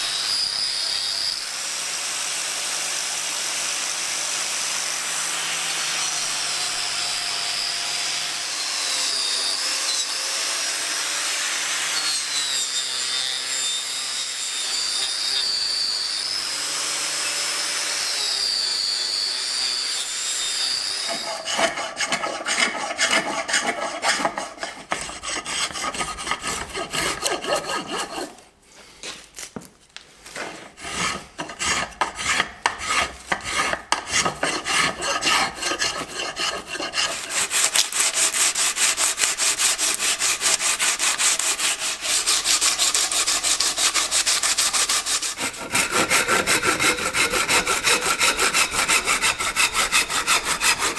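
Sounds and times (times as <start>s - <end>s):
hand tool rasping wood: 20.8s - 28.4s, 30.4s - 50.9s.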